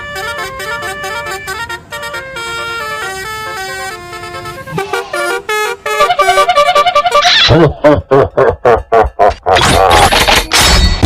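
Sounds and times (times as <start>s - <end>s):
bus horn playing a tune: 0.0s - 7.7s.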